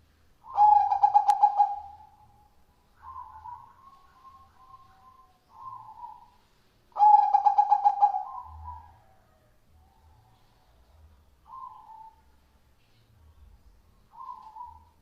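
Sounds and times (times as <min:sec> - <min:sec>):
dove cooing: 0:00.4 - 0:06.4, 0:07.0 - 0:10.6, 0:11.5 - 0:12.2, 0:14.1 - 0:15.0.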